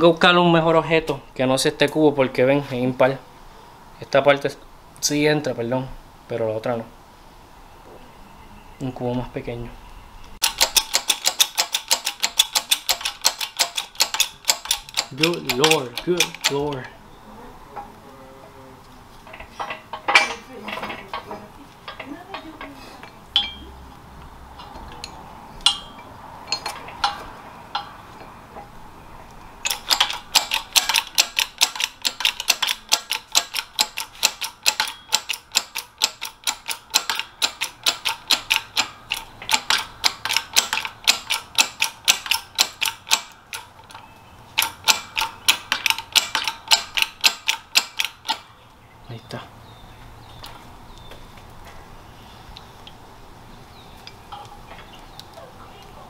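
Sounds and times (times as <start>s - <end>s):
sharp metallic clicks: 10.2s - 17.0s, 24.6s - 28.7s, 29.3s - 48.5s.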